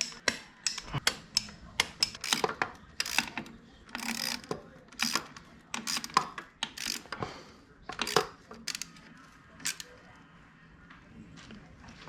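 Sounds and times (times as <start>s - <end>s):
hand tools on metal: 0.0s - 7.2s, 7.9s - 9.9s.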